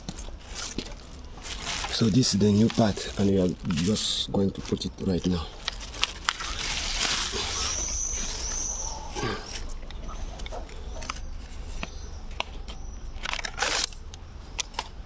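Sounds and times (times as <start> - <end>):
rustling: 0.0 - 14.0
brief high squeaks: 6.5 - 9.7.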